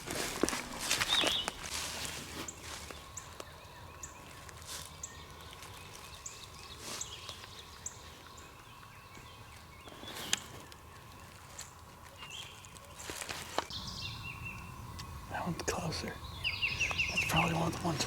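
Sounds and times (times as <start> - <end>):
footsteps in leaf litter: 0.0 - 3.5, 4.2 - 7.6, 9.5 - 13.8
songbird chirps: 0.8 - 18.0.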